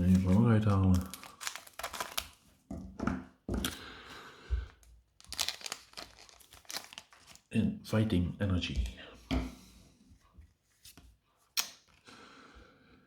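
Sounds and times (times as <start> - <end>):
foil wrapper crinkling: 0.0 - 2.4, 4.8 - 7.5
foil wrapper tearing: 0.0 - 2.4, 5.2 - 7.5.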